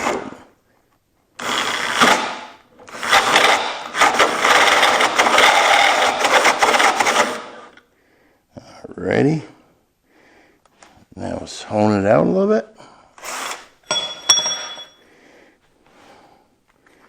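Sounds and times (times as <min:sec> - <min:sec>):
power drill reaming steel: 0:01.4 - 0:07.8, 0:13.2 - 0:14.9.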